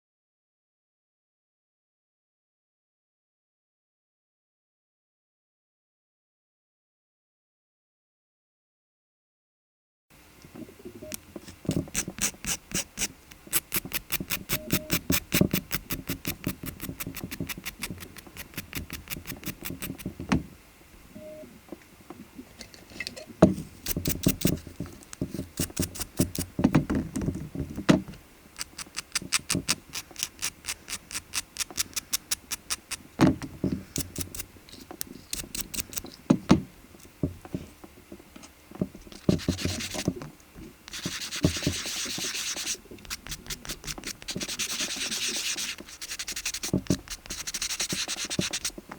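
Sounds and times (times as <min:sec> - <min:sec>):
nail tool scraping fingernails: 0:11.5 - 0:20.1, 0:23.8 - 0:24.7, 0:25.3 - 0:26.6, 0:28.6 - 0:33.1, 0:34.0 - 0:36.2, 0:39.2 - 0:40.1, 0:40.9 - 0:48.8.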